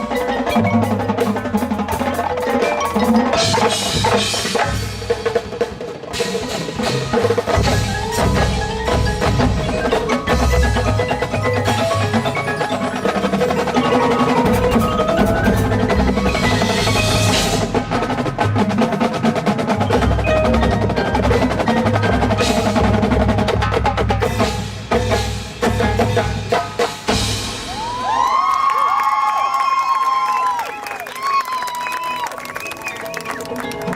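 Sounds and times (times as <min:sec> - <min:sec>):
marimba and bells: 0:00.0 - 0:05.4, 0:06.1 - 0:26.6, 0:33.3 - 0:33.9
marching band playing: 0:00.0 - 0:28.4, 0:32.0 - 0:33.9
drums: 0:00.0 - 0:33.9.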